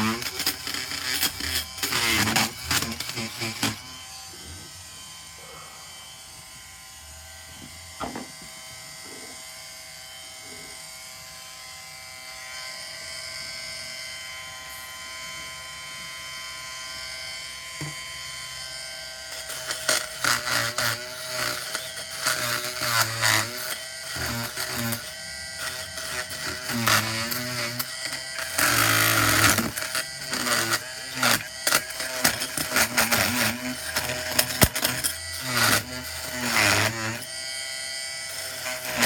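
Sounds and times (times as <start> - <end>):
blade cutting through staples and fabric: 0.0 - 4.7, 7.6 - 9.4, 19.3 - 39.0
oscillating multi-tool buzzing: 0.0 - 39.0.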